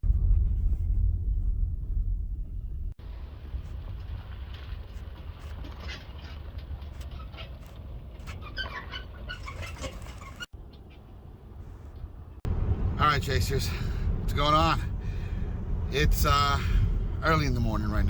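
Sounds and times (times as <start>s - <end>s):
steady low rumble: 0.0s - 7.0s, 10.5s - 18.0s.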